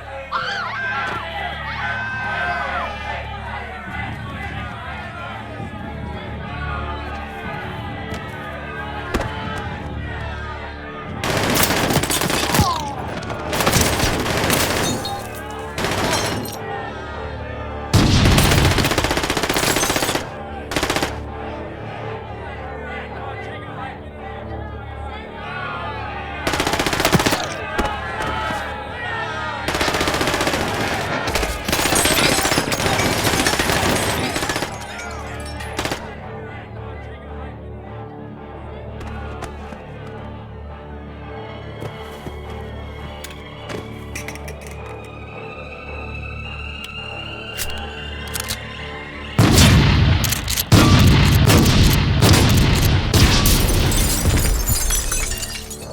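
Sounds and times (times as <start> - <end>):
dark music: 4.8 - 23.0, 23.8 - 55.9
automatic gunfire: 11.2 - 16.5, 18.0 - 21.2, 26.5 - 27.6, 29.7 - 35.0, 49.4 - 54.0.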